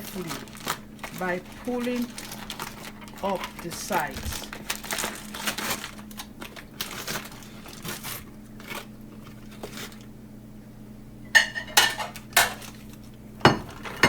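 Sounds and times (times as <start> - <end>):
paper bag rustling: 0.0 - 10.1, 12.1 - 14.0
dishware clinks: 11.4 - 12.5, 13.5 - 14.0.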